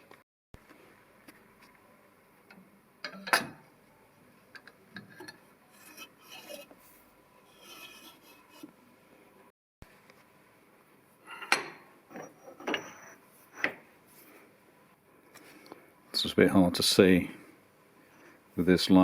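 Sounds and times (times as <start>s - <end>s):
metal parts clicking and rubbing: 4.6s - 6.8s, 7.5s - 8.7s.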